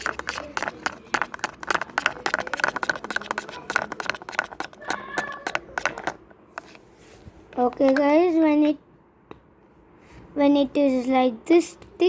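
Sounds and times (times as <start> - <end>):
spoon stirring wet slime: 0.0 - 6.8, 7.6 - 8.2.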